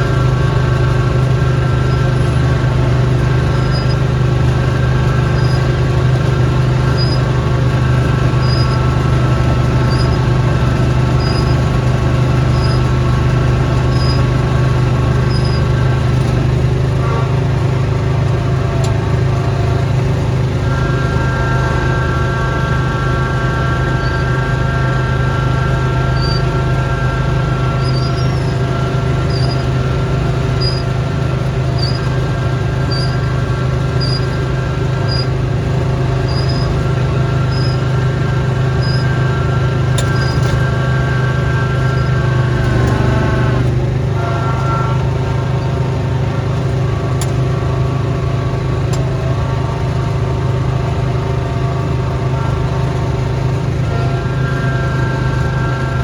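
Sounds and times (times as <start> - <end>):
snowblower engine running: 0.0 - 56.0
faint high chirp: 3.3 - 4.1, 4.7 - 6.0, 6.8 - 13.2, 13.8 - 14.6, 15.2 - 15.8, 20.8 - 30.0, 30.6 - 30.9, 31.7 - 35.4, 36.2 - 43.2.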